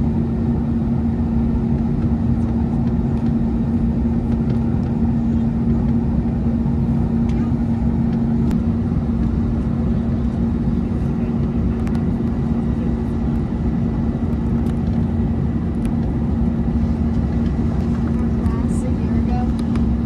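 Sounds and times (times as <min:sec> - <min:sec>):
constant low hum: 0:00.0 - 0:20.0
jet engine and airflow noise: 0:00.0 - 0:20.0.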